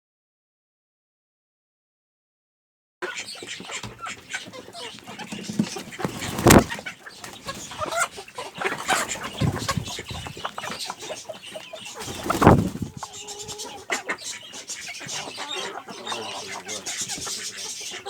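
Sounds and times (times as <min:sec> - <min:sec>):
chickens clucking and squabbling: 0:03.0 - 0:18.0
loud thumps: 0:06.3 - 0:06.8.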